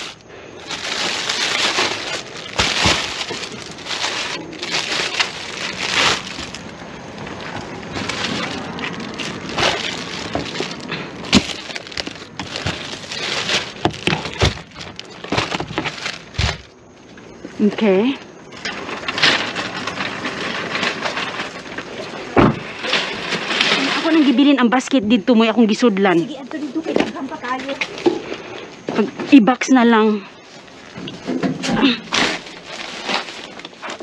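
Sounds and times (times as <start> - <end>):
bags rustling and crinkling: 0.0 - 34.0.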